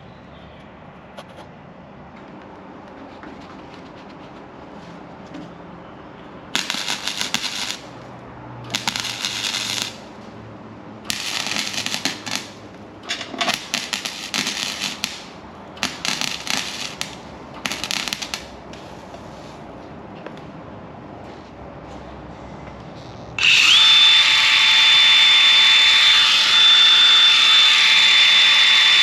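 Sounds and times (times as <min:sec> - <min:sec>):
welding arc crackling: 0:06.6 - 0:10.2, 0:11.0 - 0:19.2.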